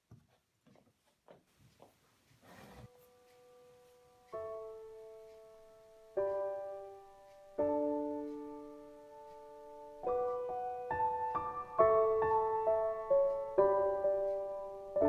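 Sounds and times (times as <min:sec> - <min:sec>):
soft solo piano: 0:04.0 - 0:15.0.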